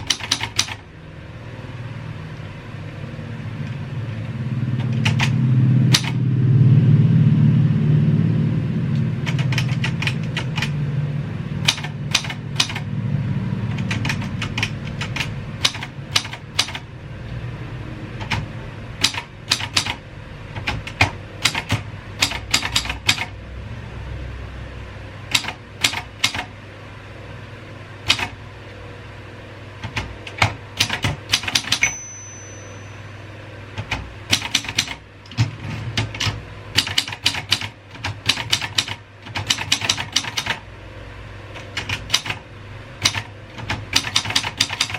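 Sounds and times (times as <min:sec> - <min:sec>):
typewriter keys clacking: 0:00.0 - 0:00.8, 0:09.2 - 0:10.7, 0:11.7 - 0:12.9, 0:13.7 - 0:16.8, 0:18.2 - 0:20.0, 0:20.6 - 0:23.3, 0:29.8 - 0:31.9, 0:33.8 - 0:40.6, 0:43.0 - 0:44.9
low rumble: 0:01.7 - 0:09.4.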